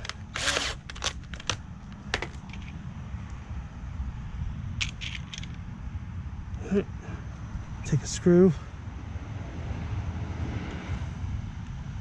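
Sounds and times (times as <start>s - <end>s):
drill bit clicks and rattles: 0.0s - 2.8s.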